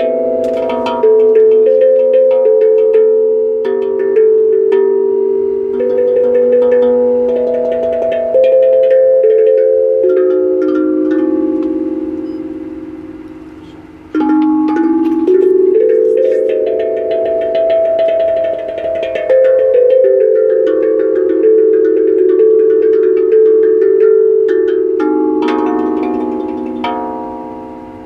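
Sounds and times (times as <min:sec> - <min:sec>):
tuned percussion melody: 0:00.0 - 0:28.0.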